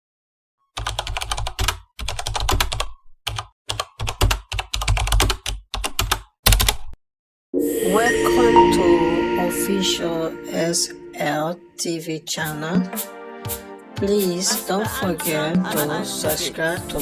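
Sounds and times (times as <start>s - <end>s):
rapid keyboard typing: 0.8s - 6.2s.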